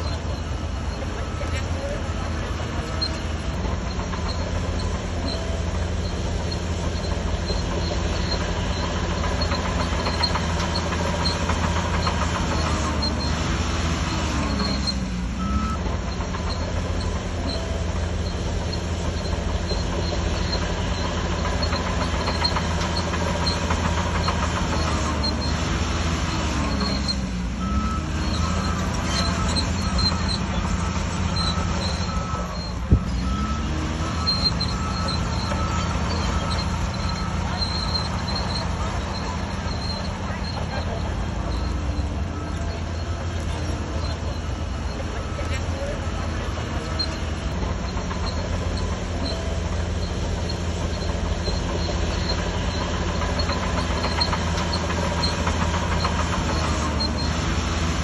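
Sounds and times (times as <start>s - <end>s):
diesel engine hum: 0.0s - 58.0s
steel tracks clanking and squeaking: 0.0s - 58.0s.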